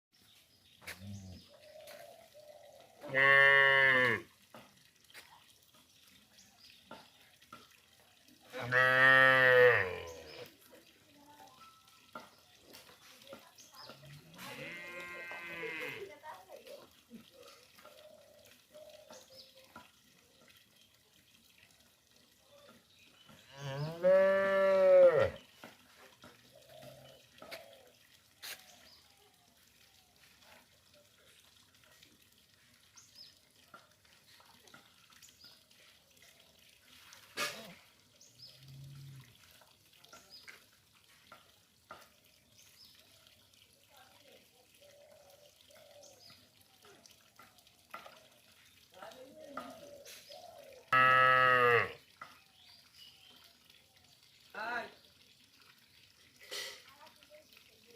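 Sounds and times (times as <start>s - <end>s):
cow mooing: 3.1s - 4.2s, 8.6s - 10.4s, 14.4s - 16.1s, 23.5s - 25.4s, 50.9s - 52.0s.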